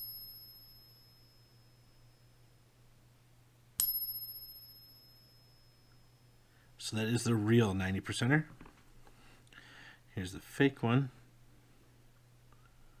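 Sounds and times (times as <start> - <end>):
silver coin ringing: 0.0 - 2.6, 3.8 - 6.5.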